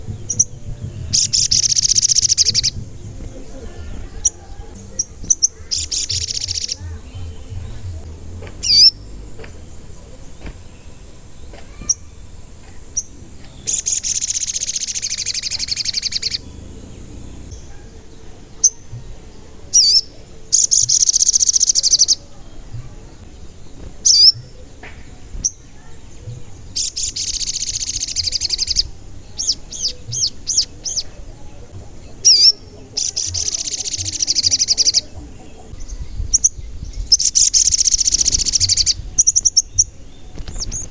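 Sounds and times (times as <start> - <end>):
sunbird rapid high trills: 0.0 - 22.4, 25.4 - 31.5
sunbird high chirps: 0.0 - 40.9.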